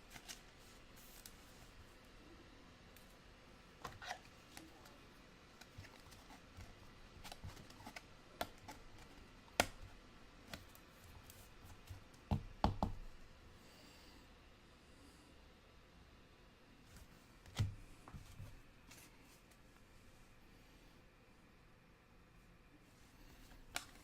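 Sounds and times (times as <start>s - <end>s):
cards and wrappers handled: 0.0s - 1.8s, 3.8s - 12.2s.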